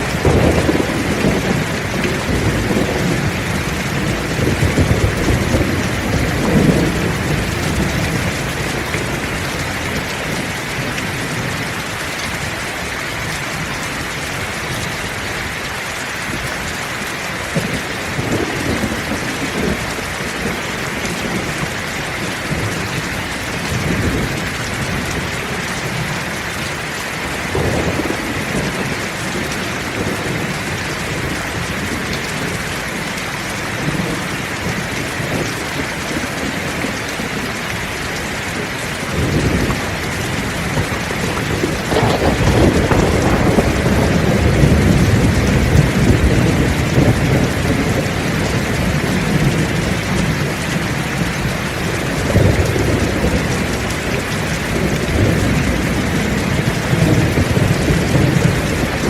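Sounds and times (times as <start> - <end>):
low thunder rumbling: 0.0 - 15.2, 17.4 - 59.0
heavy rain falling: 0.0 - 59.0.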